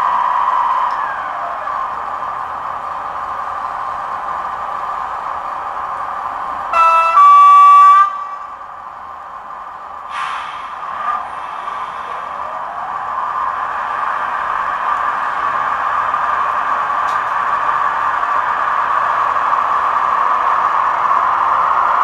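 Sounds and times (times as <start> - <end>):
model train running hum: 0.0 - 22.0
model train horn: 6.7 - 8.4
brief hiss: 10.1 - 12.2.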